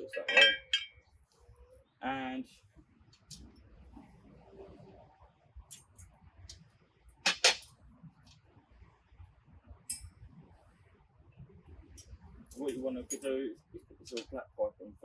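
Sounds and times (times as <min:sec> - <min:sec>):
parts clicking and clinking: 0:00.0 - 0:01.0, 0:05.7 - 0:06.1, 0:07.3 - 0:07.7, 0:09.9 - 0:10.1, 0:12.0 - 0:13.4.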